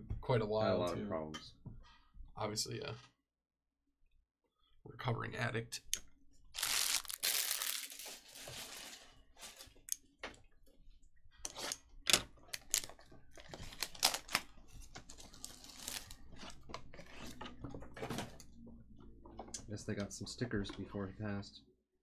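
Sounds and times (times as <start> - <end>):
cards and wrappers clicking: 6.6 - 8.2
card pack tearing rustle: 6.6 - 9.0, 12.6 - 14.4, 15.2 - 16.2.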